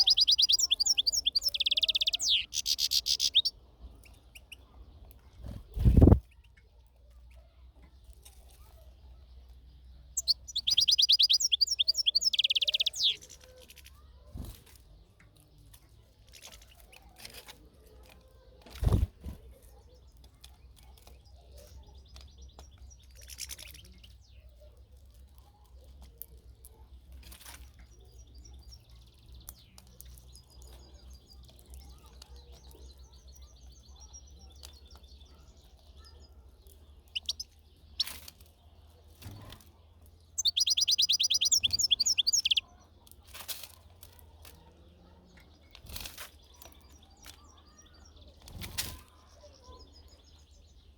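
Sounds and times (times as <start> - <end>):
goldfinch twittering: 0.0 - 3.5, 10.2 - 13.2, 37.0 - 38.1, 40.4 - 42.6.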